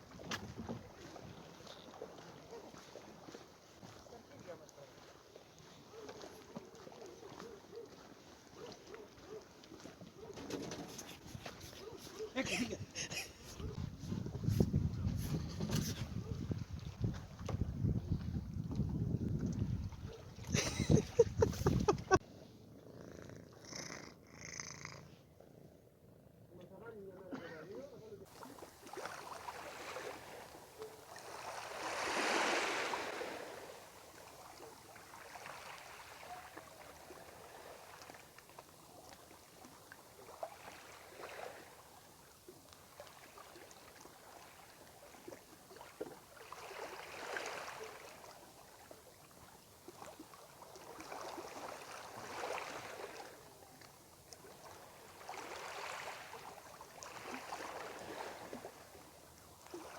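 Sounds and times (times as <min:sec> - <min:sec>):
water lapping against boat hull: 0:00.0 - 0:22.2, 0:27.3 - 0:59.9.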